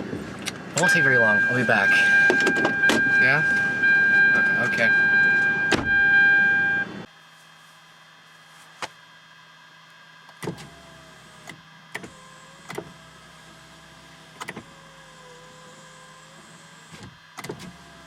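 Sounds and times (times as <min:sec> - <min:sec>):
electronic chime tone: 0:00.8 - 0:07.0
car door shutting: 0:02.2 - 0:03.2, 0:05.5 - 0:06.0.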